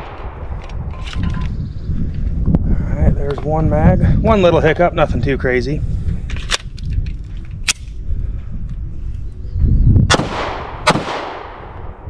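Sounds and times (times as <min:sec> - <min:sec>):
pistol shots ringing out: 0:10.1 - 0:11.9.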